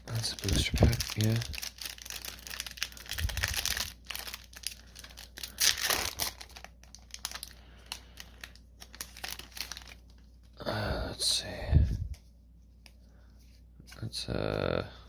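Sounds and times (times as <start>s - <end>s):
foil wrapper crinkling and tearing: 0.0s - 10.6s.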